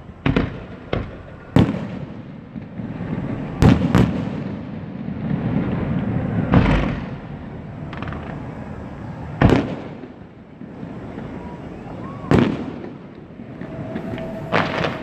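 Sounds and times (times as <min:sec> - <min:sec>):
rumbling echo: 0:00.0 - 0:15.0
firework shells bursting: 0:05.3 - 0:15.0.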